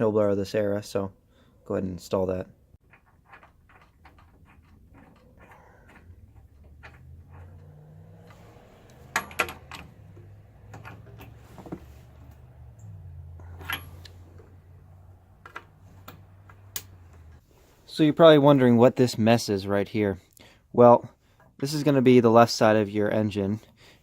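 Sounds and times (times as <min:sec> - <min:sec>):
passing road traffic rumble: 0:05.3 - 0:17.7.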